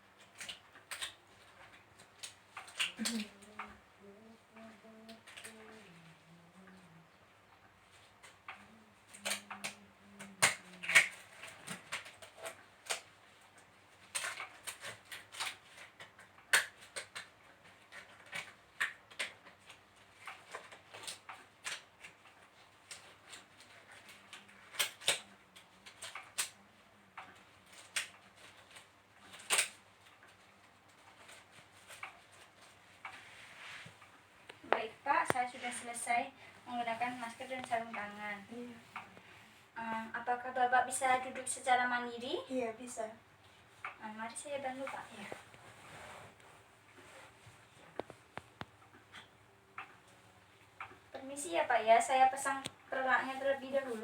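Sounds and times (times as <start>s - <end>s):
face mask and gloves crinkling: 0.1s - 6.9s, 7.6s - 54.0s
sharp snaps: 8.2s - 13.0s.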